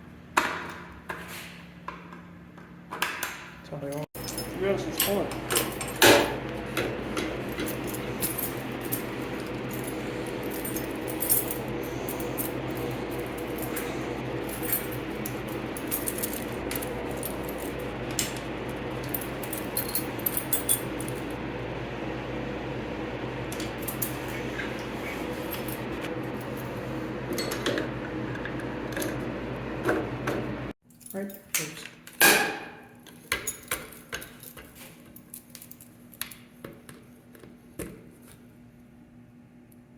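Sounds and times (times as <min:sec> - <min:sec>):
low electrical hum: 0:00.0 - 0:39.9
keys jingling: 0:03.9 - 0:21.4, 0:23.6 - 0:26.8, 0:30.8 - 0:32.3, 0:32.9 - 0:36.6.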